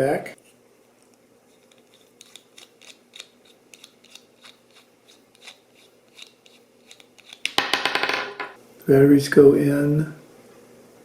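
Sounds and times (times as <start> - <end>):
threaded cap clicking and scraping: 1.0 - 7.6.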